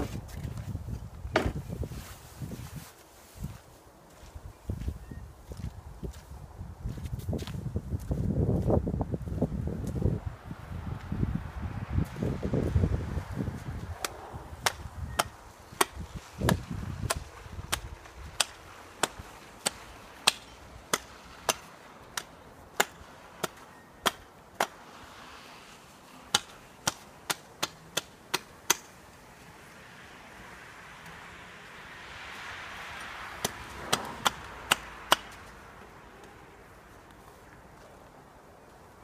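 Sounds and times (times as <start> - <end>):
wind rumbling on microphone: 0.0 - 23.4
sharp chopping strikes: 14.0 - 24.8, 26.3 - 29.0, 33.4 - 35.5.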